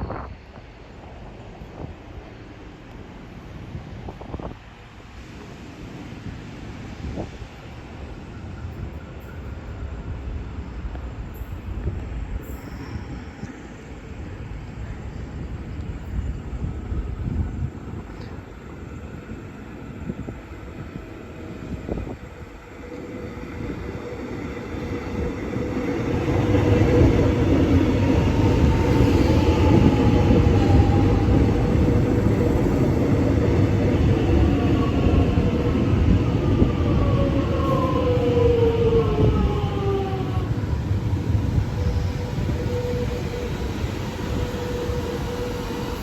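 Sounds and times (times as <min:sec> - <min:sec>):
electric train rumble: 0:00.0 - 0:46.0.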